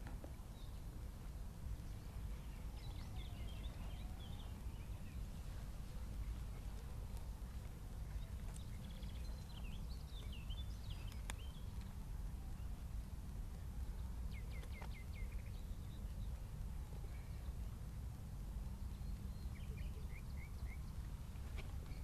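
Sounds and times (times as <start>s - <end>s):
small birds chirping: 0.0s - 17.8s, 18.6s - 22.0s.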